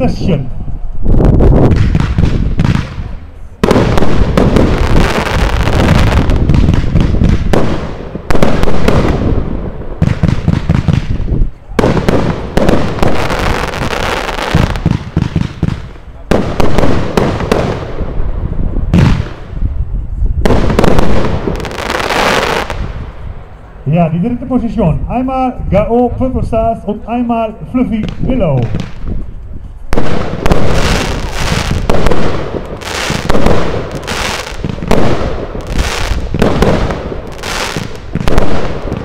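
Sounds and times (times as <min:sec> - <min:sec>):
crackling firework tails: 0:00.5 - 0:23.8, 0:28.1 - 0:39.0
firework launch thumps and bursts: 0:29.9 - 0:39.0.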